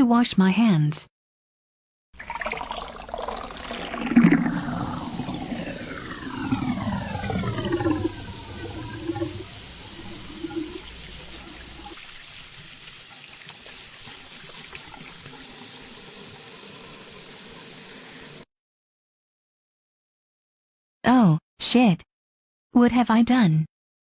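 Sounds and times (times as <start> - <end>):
faucet water running into sink: 2.2 - 18.5.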